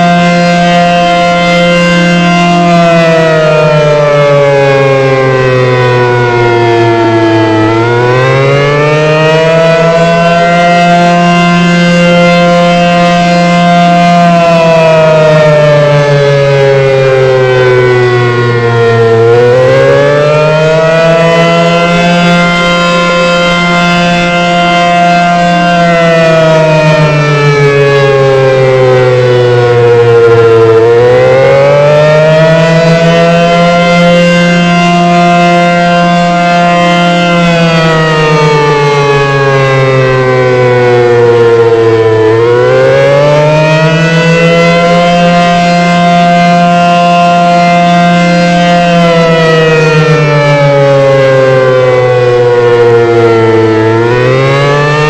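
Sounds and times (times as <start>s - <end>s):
warning siren wailing: 0.0s - 55.0s.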